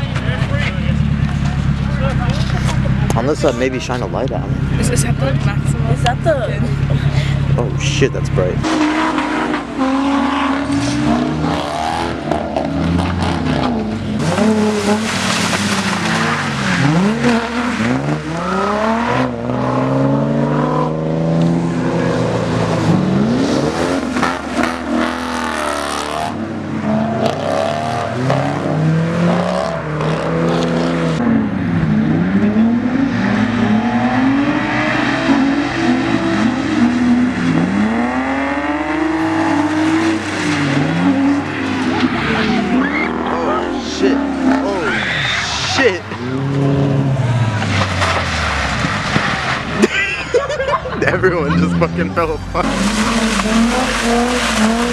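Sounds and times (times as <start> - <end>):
car engines revving: 0.0 - 54.9
tires squealing and skidding: 6.8 - 31.2, 32.0 - 49.8.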